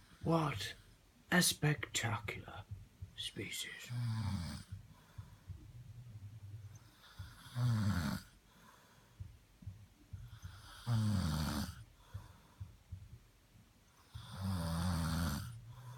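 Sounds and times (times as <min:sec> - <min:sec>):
man snoring: 0:03.9 - 0:04.8, 0:06.9 - 0:08.4, 0:10.3 - 0:11.8, 0:14.1 - 0:15.9.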